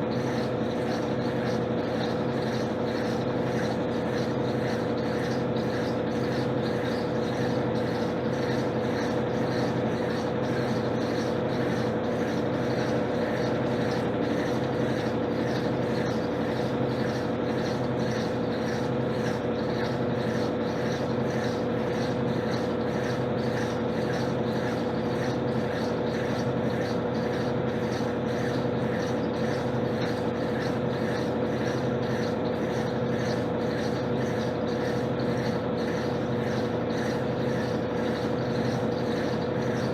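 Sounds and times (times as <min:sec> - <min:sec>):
washing machine spinning: 0:00.0 - 0:39.9.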